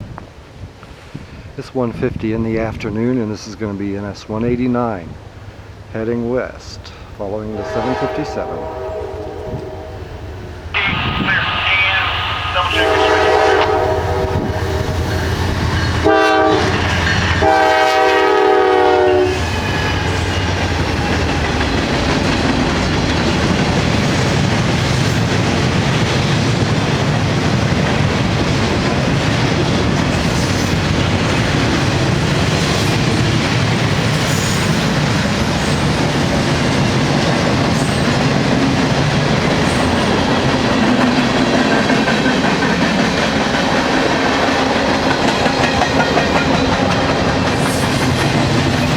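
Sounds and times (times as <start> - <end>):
diesel locomotive engines working: 5.0 - 48.9
locomotive air horn blasts: 7.5 - 10.1, 10.8 - 15.4, 16.0 - 20.0
train wheels clacking on rails: 12.5 - 48.9.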